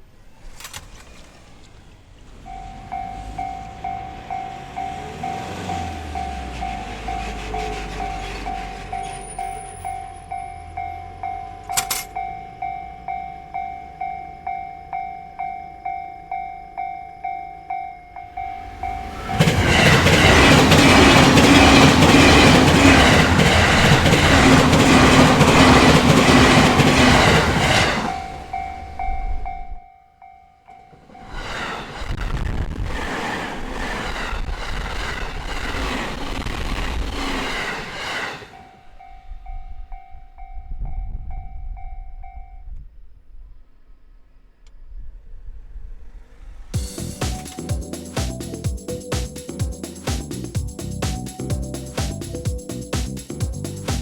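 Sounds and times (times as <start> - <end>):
train passing with rumble: 0.0 - 54.0
level-crossing alarm bell ringing: 2.2 - 31.9, 38.6 - 42.7.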